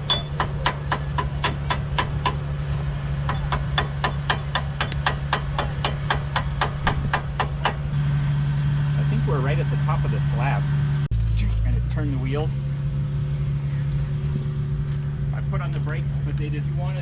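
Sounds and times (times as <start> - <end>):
sharp even ticking: 0.0 - 8.0
idling engine hum: 0.0 - 17.0.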